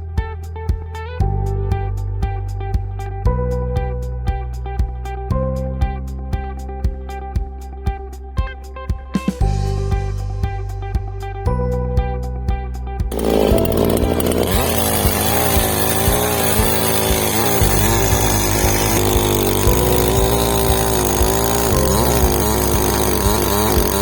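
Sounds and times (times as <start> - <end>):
background music with steady beat: 0.0 - 13.1
chainsaw cutting wood: 13.1 - 24.0.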